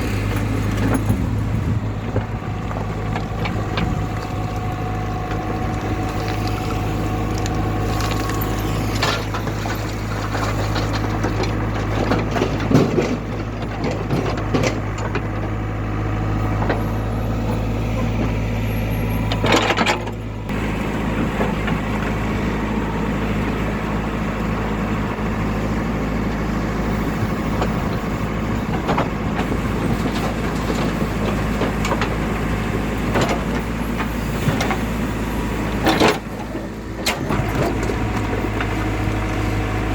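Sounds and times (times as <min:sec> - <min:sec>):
heavy machinery diesel engines: 0:00.0 - 0:39.9
knocks and clanks: 0:07.9 - 0:15.6.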